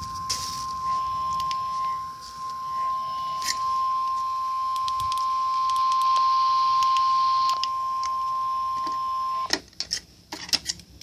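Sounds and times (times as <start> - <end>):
steady alarm tone: 0.0 - 9.5
faint static clicks: 3.4 - 11.0.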